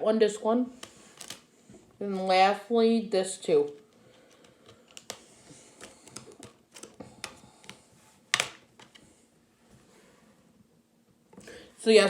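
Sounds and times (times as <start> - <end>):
plastic disc cases clicking: 1.2 - 1.4, 3.7 - 9.0
plastic snap: 5.8 - 8.9.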